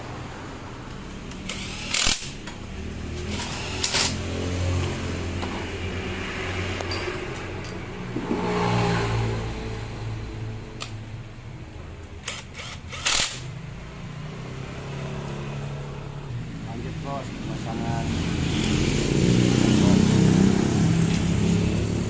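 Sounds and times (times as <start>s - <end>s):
motorcycle engine idling and revving: 0.0s - 22.0s
sharp bursts of noise: 1.4s - 2.4s, 12.2s - 13.5s.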